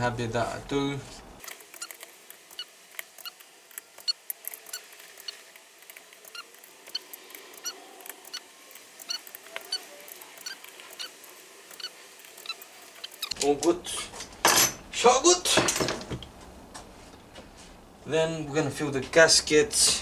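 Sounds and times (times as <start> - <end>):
torque wrench clicking: 1.4 - 11.1.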